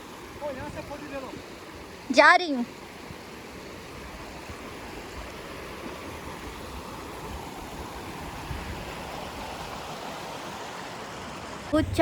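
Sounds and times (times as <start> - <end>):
low rumbles: 11.7 - 12.0.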